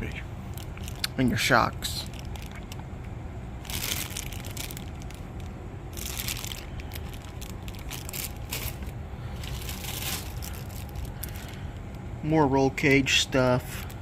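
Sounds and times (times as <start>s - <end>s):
plastic bags crinkling: 0.5s - 1.1s, 1.7s - 2.8s, 3.6s - 11.9s, 13.5s - 14.0s.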